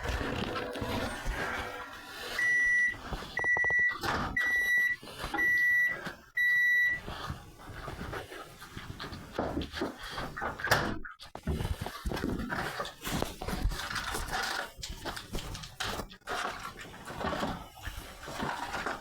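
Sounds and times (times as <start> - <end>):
electronic appliance beeps: 0.0 - 7.1.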